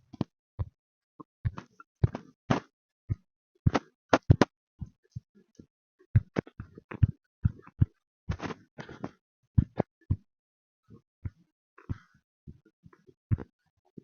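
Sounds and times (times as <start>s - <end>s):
keyboard and mouse clicks: 3.7s - 4.5s.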